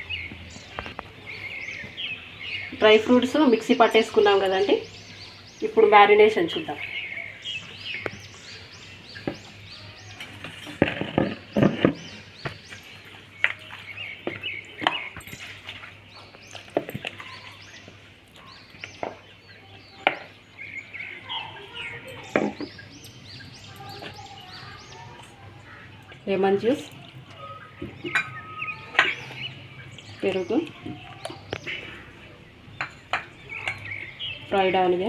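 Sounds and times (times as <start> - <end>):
small birds chirping: 0.0 - 35.0
kitchen utensils and bowls clattering: 27.8 - 29.3, 32.8 - 34.0.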